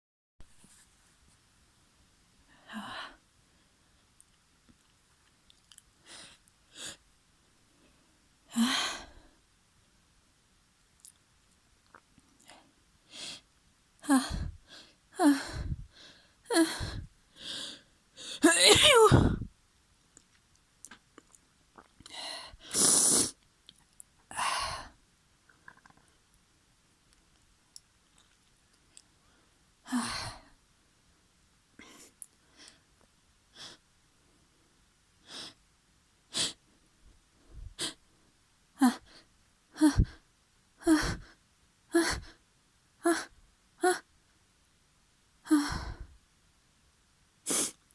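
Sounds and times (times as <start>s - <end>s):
person sneezing: 18.3s - 19.5s, 22.7s - 23.3s.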